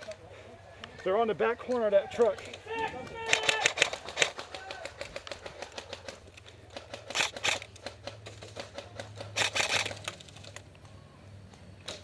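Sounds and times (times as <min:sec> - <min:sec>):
airsoft guns firing: 0:02.2 - 0:10.0.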